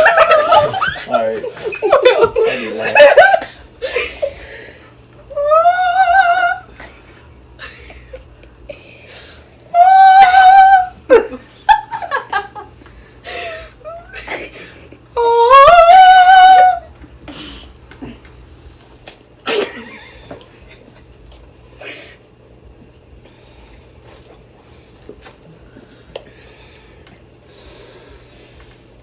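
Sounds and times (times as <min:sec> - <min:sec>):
person laughing: 0:00.0 - 0:04.4, 0:10.1 - 0:12.7
person making high drawn-out sounds: 0:05.3 - 0:06.8, 0:09.8 - 0:11.2, 0:15.2 - 0:16.9.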